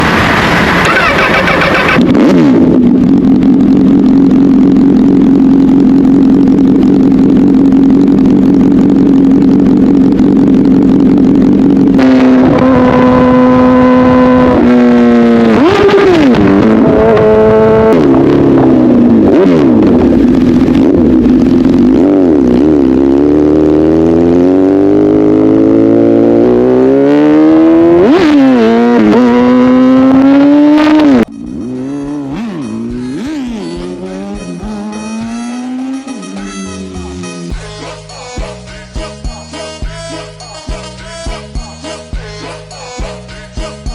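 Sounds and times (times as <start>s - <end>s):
motorcycle engine idling and revving: 0.0s - 43.9s.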